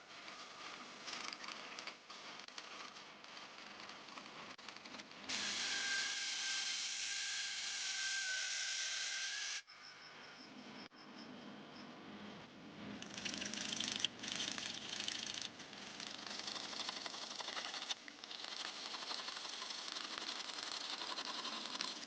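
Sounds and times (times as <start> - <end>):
power tool whining: 5.3 - 9.6.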